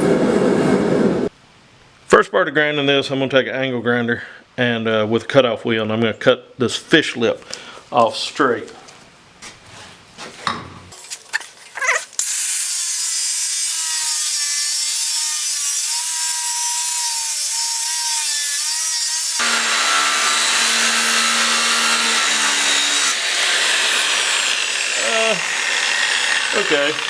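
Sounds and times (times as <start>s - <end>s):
angle grinder cutting steel: 11.0s - 27.0s.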